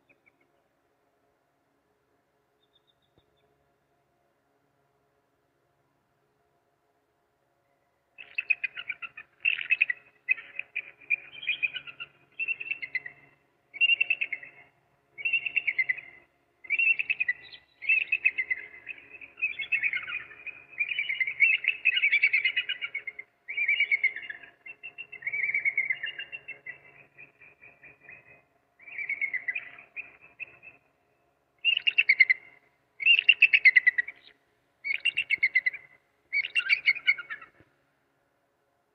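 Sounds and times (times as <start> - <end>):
eagle calling: 8.2 - 14.6, 15.2 - 26.7, 31.6 - 37.6.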